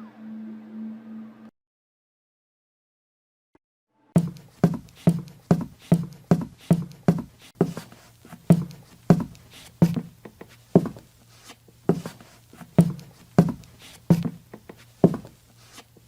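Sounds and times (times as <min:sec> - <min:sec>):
footsteps dull thuds: 0:04.2 - 0:16.0.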